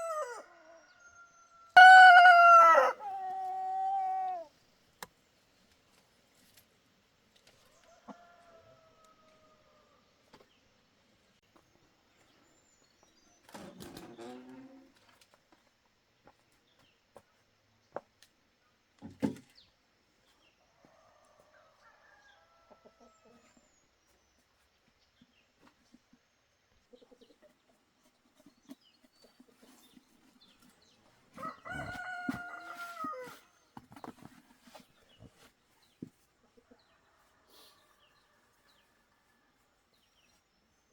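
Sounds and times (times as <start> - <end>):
rooster crowing: 0.0 - 4.5, 7.8 - 10.0, 31.4 - 33.4.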